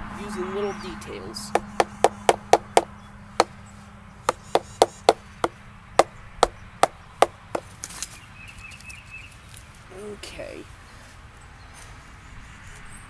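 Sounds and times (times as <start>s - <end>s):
mallet striking chisel into wood: 1.6s - 2.9s, 4.3s - 5.2s, 7.2s - 7.7s.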